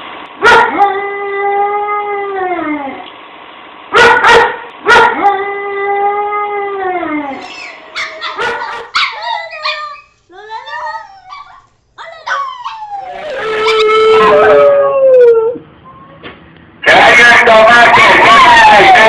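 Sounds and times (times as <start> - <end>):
dog barks: 0.4 - 0.8, 3.9 - 5.4, 7.6 - 10.1
dogs howling: 5.0 - 15.6, 17.9 - 19.0
yelping howls: 5.2 - 15.6.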